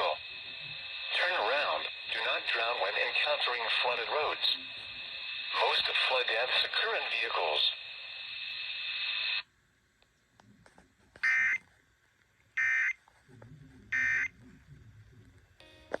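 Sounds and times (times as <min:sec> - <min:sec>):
radio hiss: 0:00.0 - 0:09.5, 0:13.3 - 0:16.0.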